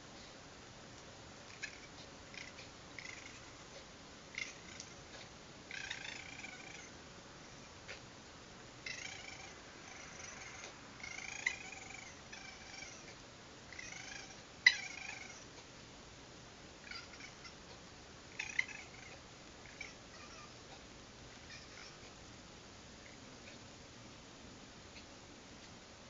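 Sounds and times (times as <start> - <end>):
raccoons churring and chittering: 1.5 - 8.0, 8.8 - 15.6, 16.8 - 22.2.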